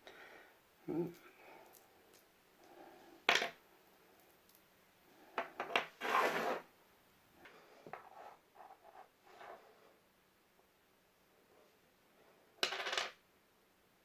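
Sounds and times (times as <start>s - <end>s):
nuts scraping across magnet: 5.6s - 6.7s.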